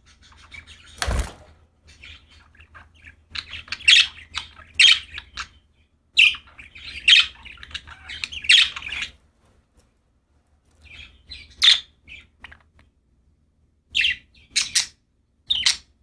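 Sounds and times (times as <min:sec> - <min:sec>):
budgerigars chirping: 0:00.0 - 0:01.1, 0:01.8 - 0:09.2, 0:10.8 - 0:12.8, 0:13.9 - 0:16.0.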